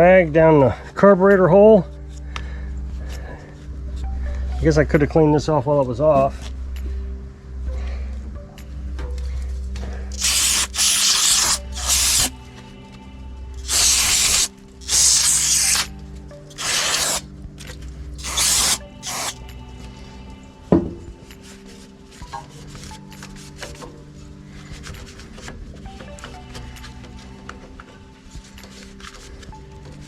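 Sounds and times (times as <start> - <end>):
hissing spray blasts: 10.2 - 12.3, 13.6 - 15.9, 16.5 - 17.2, 18.2 - 19.4.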